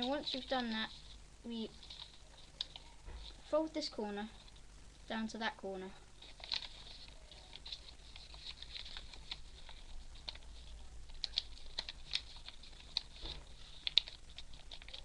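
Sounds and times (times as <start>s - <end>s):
paper folding and rustling: 0.0s - 3.6s, 6.2s - 15.0s
crisp paper clicks: 1.8s - 3.4s, 6.2s - 15.0s.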